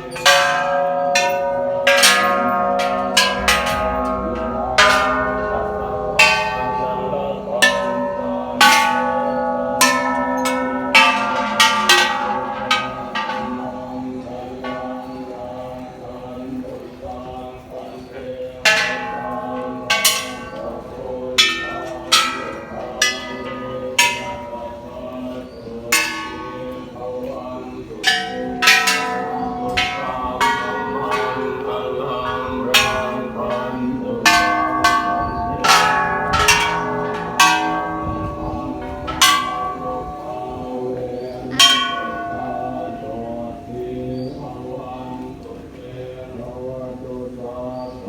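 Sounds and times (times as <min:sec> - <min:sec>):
large temple bells ringing: 0:00.0 - 0:48.0.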